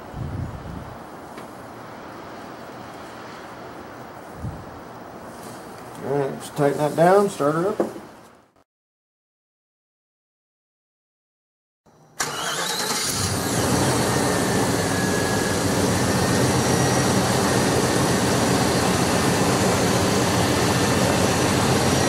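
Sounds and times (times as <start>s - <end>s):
truck engine starting and idling: 12.2s - 22.0s.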